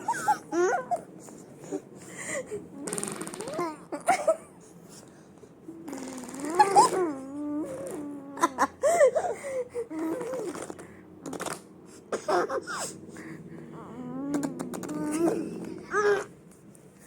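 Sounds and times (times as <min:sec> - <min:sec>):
baby squealing and babbling: 0:06.3 - 0:08.6.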